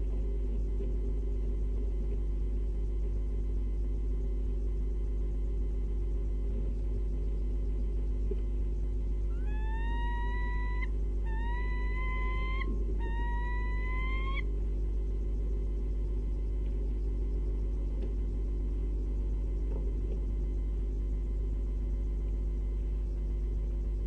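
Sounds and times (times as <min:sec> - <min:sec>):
low electrical hum: 0:00.0 - 0:24.0
owl hooting: 0:09.2 - 0:14.6.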